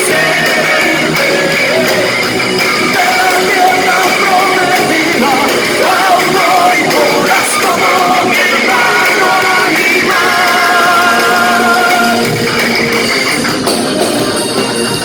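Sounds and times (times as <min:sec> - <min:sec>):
singing voice: 0:00.0 - 0:12.6
rock band playing live: 0:00.0 - 0:15.0.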